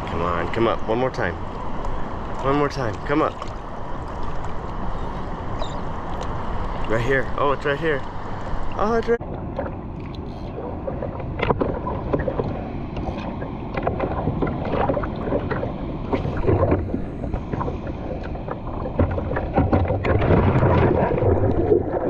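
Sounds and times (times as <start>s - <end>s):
water splashing against surfboard: 1.5s - 5.2s, 9.4s - 22.0s
wind on microphone: 8.1s - 22.0s.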